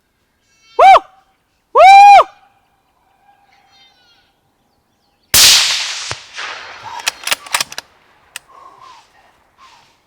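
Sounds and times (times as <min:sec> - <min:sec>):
faint bleating predator call: 0:00.4 - 0:01.0, 0:03.2 - 0:04.4
gunshot with echo: 0:05.4 - 0:07.5
sharp clicks and knocks: 0:06.9 - 0:08.5.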